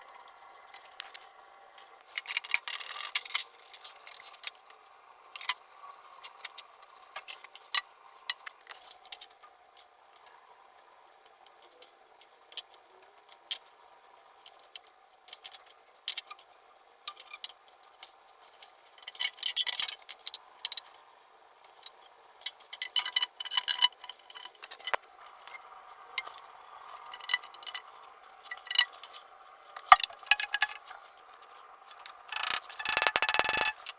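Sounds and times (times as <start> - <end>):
scraping of fittings: 2.1 - 4.4, 26.2 - 33.9
tools clicking and knocking: 27.2 - 30.9, 32.0 - 33.9.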